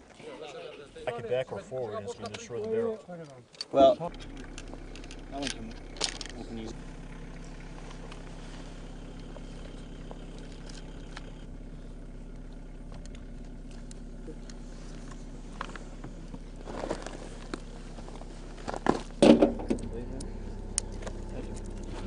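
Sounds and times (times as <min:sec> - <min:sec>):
low mechanical hum: 0:04.1 - 0:22.0
knocks and rustling: 0:15.6 - 0:20.0.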